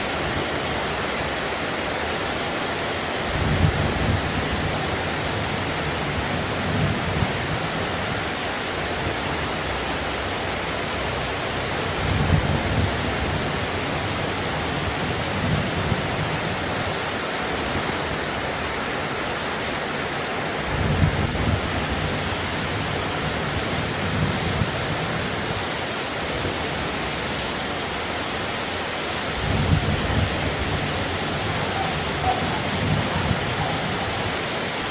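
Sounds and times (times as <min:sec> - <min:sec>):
steady rain: 0:00.0 - 0:34.9
distant thunder rolling: 0:29.2 - 0:34.9.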